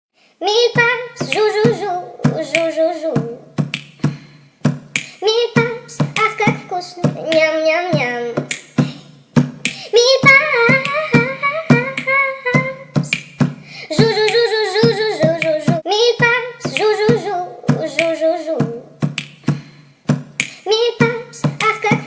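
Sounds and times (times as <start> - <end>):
child singing: 0.4 - 3.6, 5.2 - 9.1, 9.8 - 13.2, 13.9 - 19.0, 20.6 - 22.0
hand-beat percussion: 1.2 - 7.5, 8.4 - 9.8, 10.7 - 22.0.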